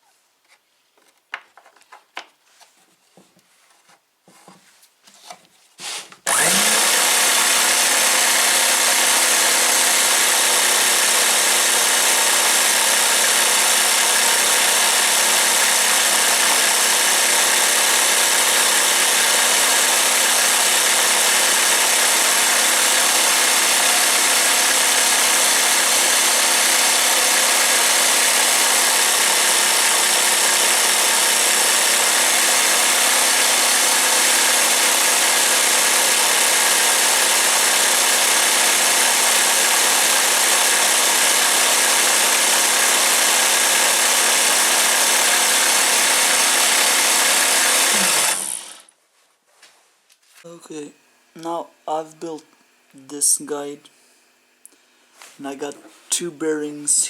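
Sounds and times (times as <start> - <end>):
jigsaw running: 5.8 - 48.9.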